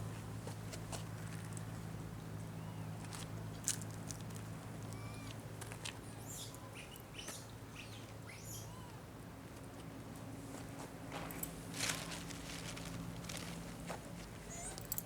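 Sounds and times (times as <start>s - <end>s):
monkey high chirps: 6.2s - 9.0s.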